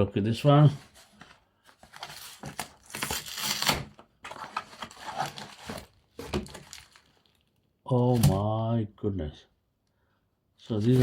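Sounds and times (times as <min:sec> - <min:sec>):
packaging crinkling and tearing: 0:01.7 - 0:08.4.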